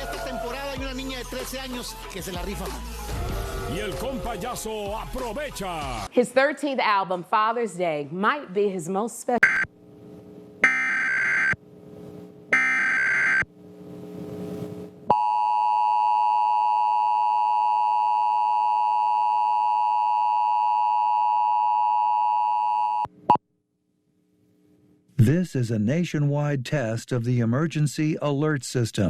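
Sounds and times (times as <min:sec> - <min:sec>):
two-tone attention signal: 0:09.4 - 0:09.7.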